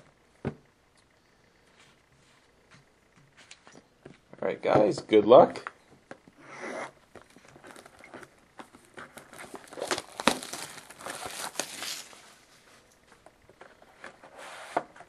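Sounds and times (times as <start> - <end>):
plastic wrapping crinkling and tearing: 7.2 - 12.4.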